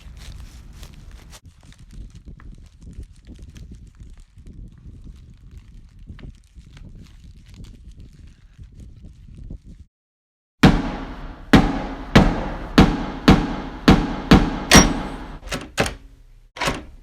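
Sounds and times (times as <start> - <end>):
sharp ringing knocking strikes: 10.6 - 15.4.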